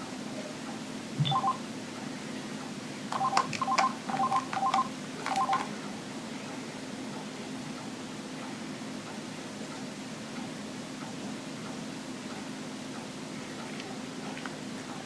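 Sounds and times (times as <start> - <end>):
phone keypad beeps: 1.2 - 1.6, 3.2 - 5.7.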